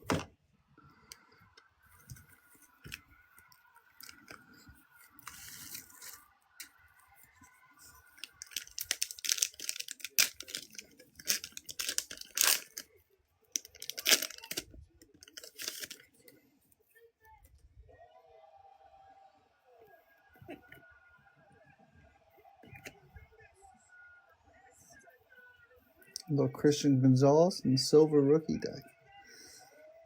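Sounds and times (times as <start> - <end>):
card wrappers tearing and crinkling: 4.0 - 6.8, 7.8 - 12.9, 13.6 - 16.2.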